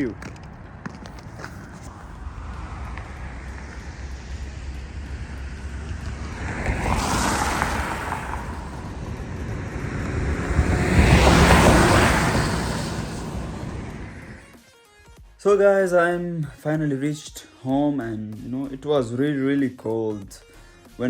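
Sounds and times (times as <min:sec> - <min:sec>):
low outdoor rumble: 0:00.0 - 0:14.4
vehicles passing by: 0:00.0 - 0:14.5.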